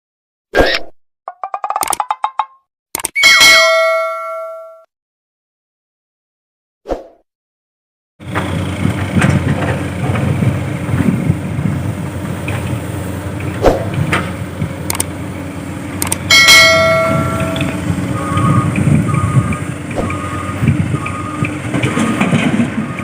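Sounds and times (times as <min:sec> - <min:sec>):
bell-like metallic clang: 0:03.2 - 0:04.9, 0:16.3 - 0:17.8
excavator diesel engine under load: 0:08.2 - 0:23.0.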